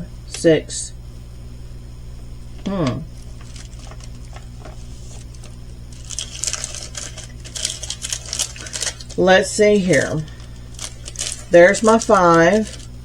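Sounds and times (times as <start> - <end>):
plastic bags rustling: 2.7 - 13.0.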